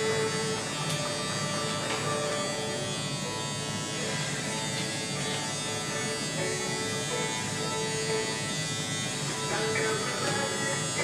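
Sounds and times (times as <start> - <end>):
electric hair clippers buzzing: 0.0 - 11.0
background music: 5.5 - 11.0.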